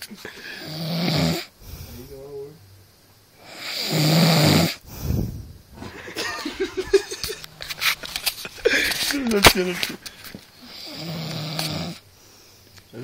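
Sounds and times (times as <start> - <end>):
man snoring: 0.4 - 2.2, 3.4 - 5.5, 10.6 - 12.0.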